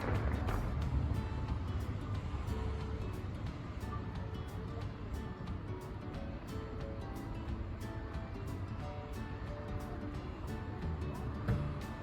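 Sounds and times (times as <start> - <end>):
fireworks crackling and rumbling: 0.0 - 5.3
music: 0.0 - 12.0.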